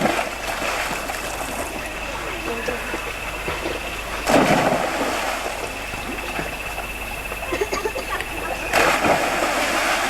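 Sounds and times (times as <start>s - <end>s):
rushing water: 0.0s - 10.0s
water splash: 4.2s - 6.5s, 8.7s - 10.0s.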